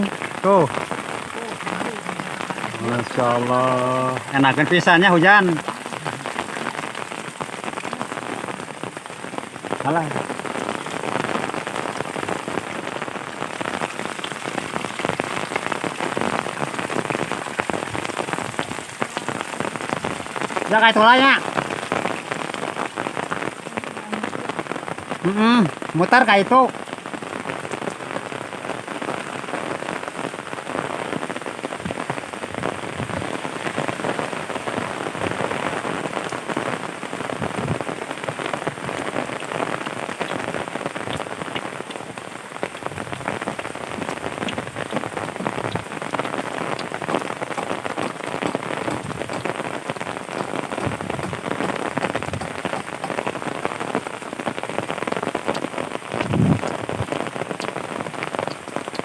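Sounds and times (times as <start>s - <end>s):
steady rain falling: 0.0s - 59.0s
dull low thump: 48.4s - 49.5s, 50.7s - 53.3s.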